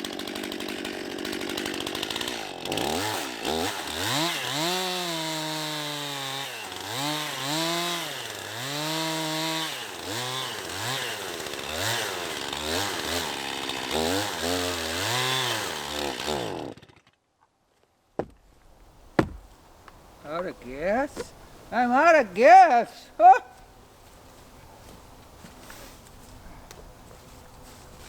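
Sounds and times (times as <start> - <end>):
chainsaw cutting wood: 0.0 - 17.2, 18.2 - 22.2.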